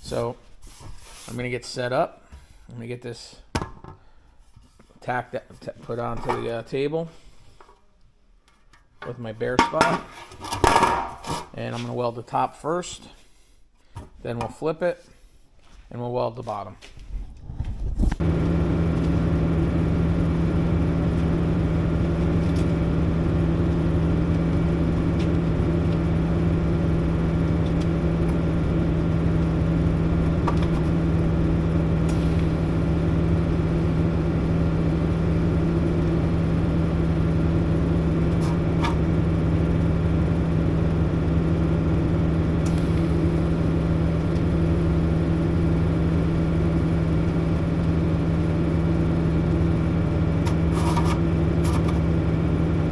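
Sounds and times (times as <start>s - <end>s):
welding machine humming: 18.2s - 52.9s.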